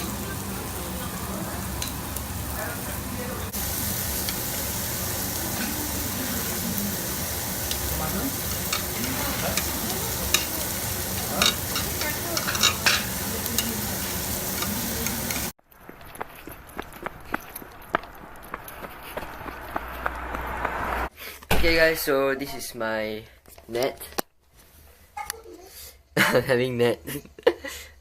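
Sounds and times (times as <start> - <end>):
meat sizzling on a grill: 0.0 - 15.6.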